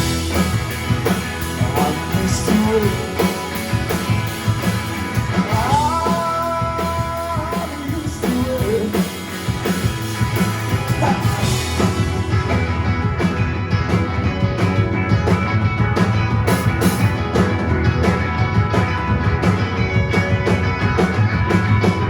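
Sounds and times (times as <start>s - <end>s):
bass guitar: 0.0s - 22.0s
drum kit with cymbals: 0.0s - 22.0s
electric guitars: 0.0s - 22.0s.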